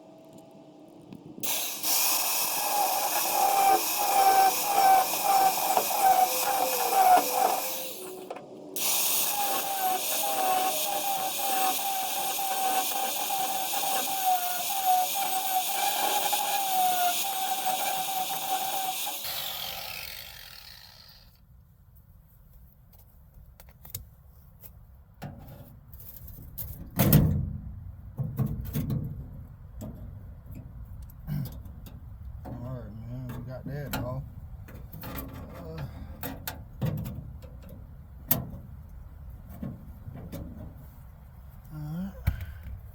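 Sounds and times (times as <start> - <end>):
angle grinder cutting metal: 1.4 - 21.3
clicks and clatter of handling parts: 22.9 - 27.2.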